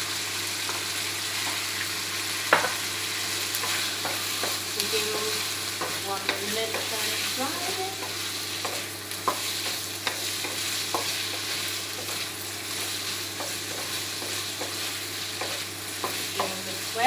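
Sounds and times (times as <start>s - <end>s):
meat sizzling in hot oil: 0.0s - 17.0s
utensil scraping a wok: 3.5s - 17.0s.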